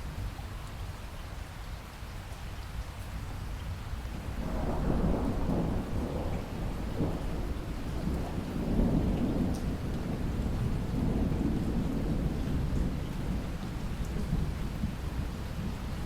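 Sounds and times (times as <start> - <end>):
steady rain: 0.0 - 16.0
rolling thunder: 4.2 - 16.0.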